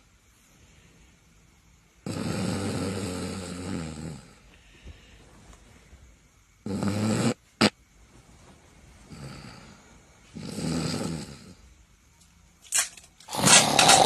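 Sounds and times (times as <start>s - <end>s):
quiet breath: 0.2s - 1.9s, 4.1s - 6.6s, 8.1s - 10.4s
loud rasping snore: 2.0s - 4.4s, 6.6s - 7.8s, 9.1s - 9.7s, 10.3s - 11.6s, 13.3s - 14.0s.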